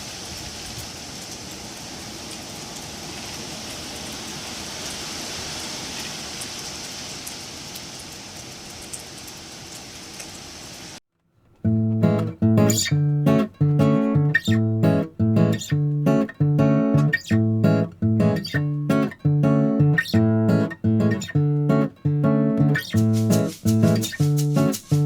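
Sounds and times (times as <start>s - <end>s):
strummed guitar chords: 11.6s - 25.0s.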